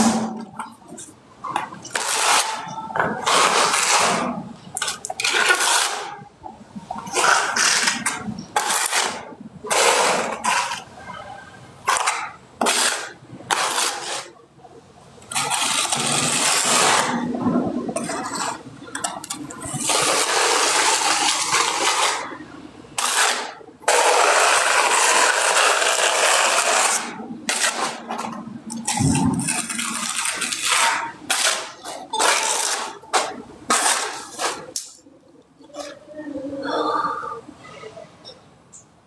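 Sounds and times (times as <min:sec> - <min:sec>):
loud scraping rushing noise: 0:15.3 - 0:18.7, 0:19.3 - 0:22.4.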